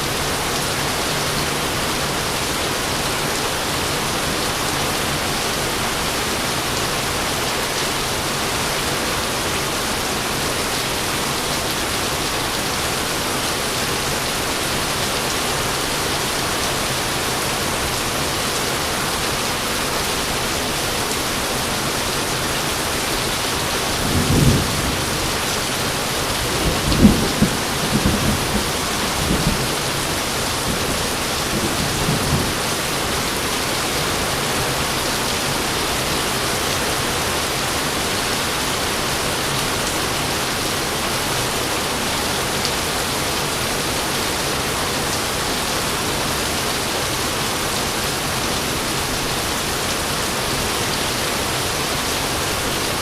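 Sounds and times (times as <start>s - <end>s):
heavy rain hissing: 0.0s - 53.0s
thunder rolling: 24.0s - 32.6s.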